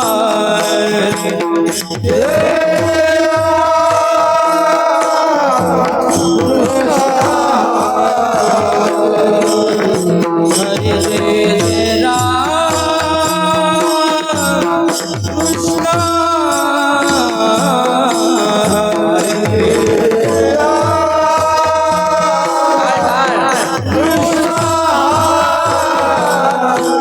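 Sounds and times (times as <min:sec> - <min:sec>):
person singing long notes: 0:00.0 - 0:27.0
drum strokes: 0:14.7 - 0:27.0.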